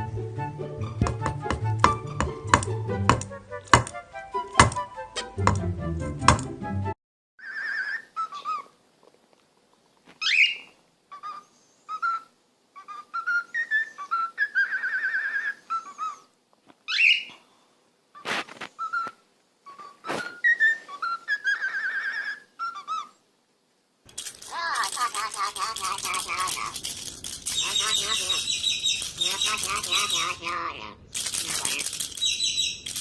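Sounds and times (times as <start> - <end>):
parrot squeaks: 7.4 - 8.7, 10.2 - 16.3, 16.9 - 17.3, 18.8 - 23.1, 24.4 - 26.8, 27.4 - 33.0
parrot whistling: 10.2 - 16.3, 18.8 - 23.1, 27.5 - 30.7, 31.5 - 32.9.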